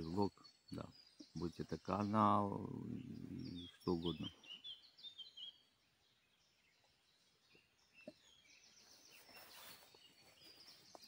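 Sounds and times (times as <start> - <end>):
distant songbirds chirping: 0.0 - 11.0
soft rustle: 8.7 - 11.0.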